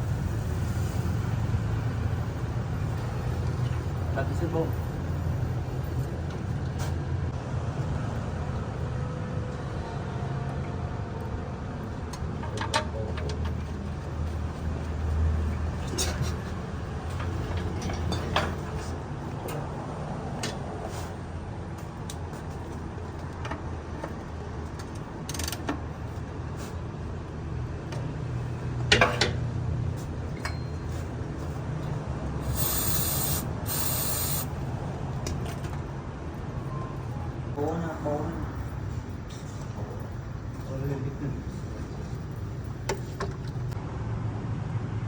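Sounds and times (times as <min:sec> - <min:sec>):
hissing spray bursts: 0:32.4 - 0:34.6.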